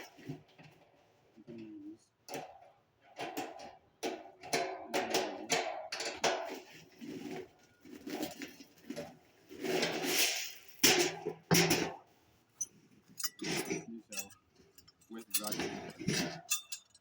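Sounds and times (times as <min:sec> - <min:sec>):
rattling scrape: 0:00.0 - 0:17.0
metal parts clinking and knocking: 0:12.6 - 0:17.0.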